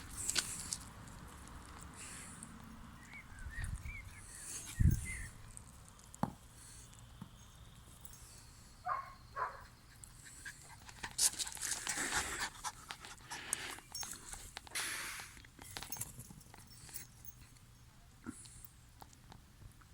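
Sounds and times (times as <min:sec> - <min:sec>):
dog panting: 0:09.4 - 0:13.8.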